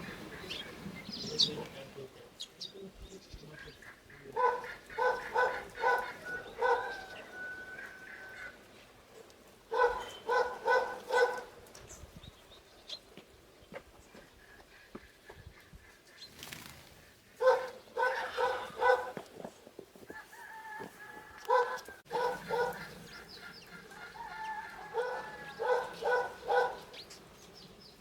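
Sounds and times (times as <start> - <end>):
dog barking: 4.4 - 7.1, 9.7 - 11.5, 17.4 - 19.2, 21.4 - 23.0, 24.9 - 26.9.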